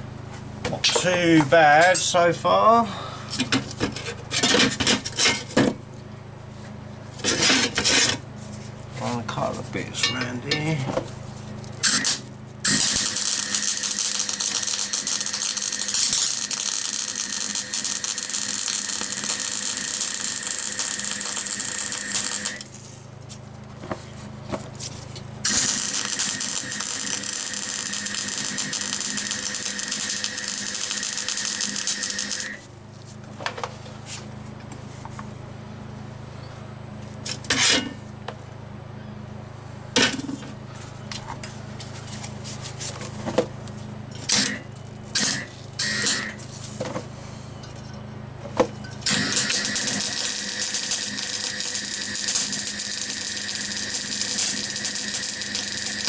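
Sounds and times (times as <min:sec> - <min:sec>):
low steady hum: 0:00.0 - 0:05.9, 0:06.6 - 0:11.8
short welding bursts: 0:11.8 - 0:22.6, 0:25.5 - 0:32.6, 0:49.1 - 0:56.0
welding arc crackling hiss: 0:11.8 - 0:22.7, 0:25.5 - 0:32.6, 0:49.1 - 0:56.0.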